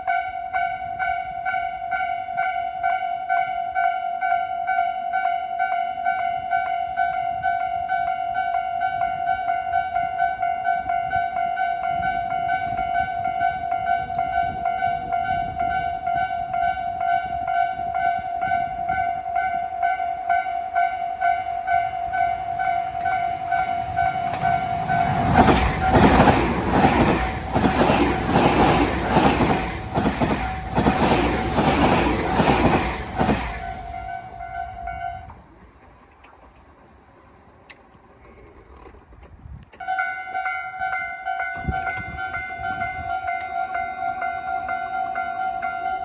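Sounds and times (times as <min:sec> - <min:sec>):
train wheels clattering over rails: 0:19.5 - 0:36.7.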